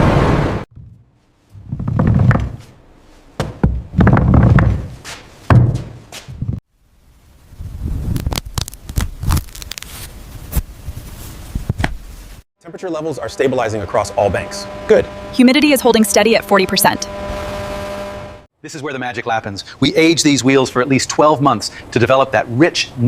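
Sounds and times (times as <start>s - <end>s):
dull heavy thunks: 0.7s - 2.8s, 3.4s - 6.6s.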